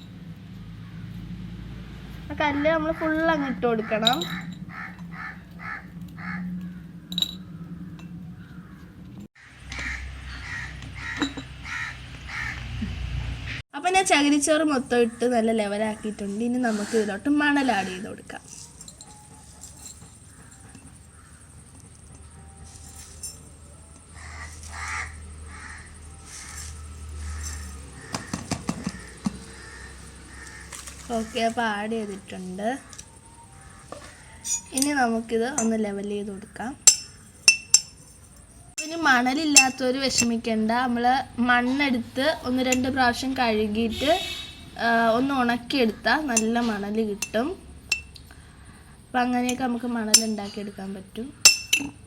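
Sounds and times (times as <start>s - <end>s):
crows cawing: 3.8s - 12.8s, 20.2s - 22.0s, 24.0s - 31.6s, 32.8s - 34.6s
sharp glassy clink: 36.8s - 38.2s, 51.4s - 52.0s.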